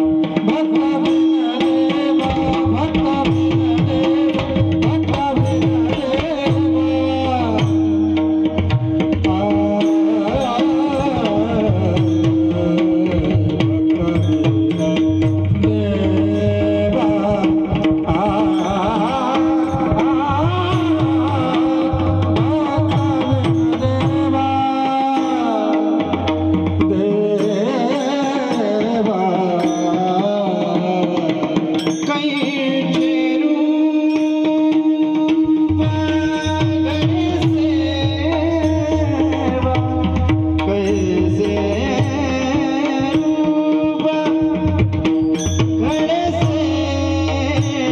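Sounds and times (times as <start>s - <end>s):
man singing devotional song: 0.0s - 47.9s
mridang drum strokes: 0.0s - 47.9s.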